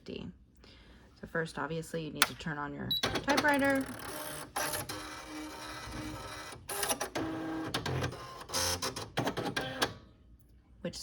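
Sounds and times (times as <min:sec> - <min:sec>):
typewriter sharp clicks: 0:03.0 - 0:05.0
typewriter motors whirring: 0:03.0 - 0:10.0.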